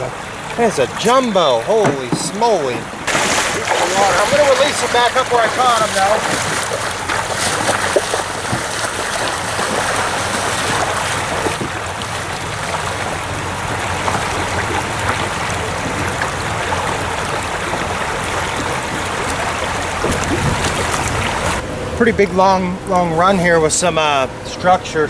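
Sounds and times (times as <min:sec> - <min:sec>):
river water rushing: 0:00.0 - 0:25.0.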